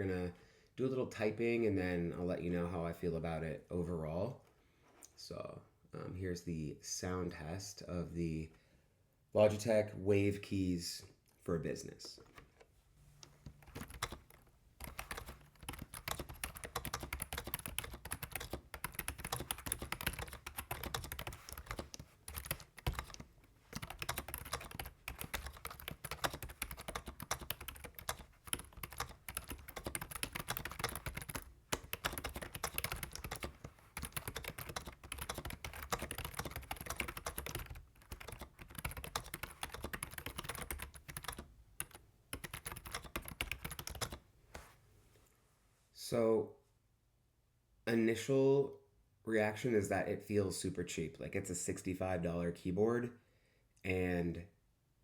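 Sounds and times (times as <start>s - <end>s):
fast typing on keyboard: 13.5s - 44.2s.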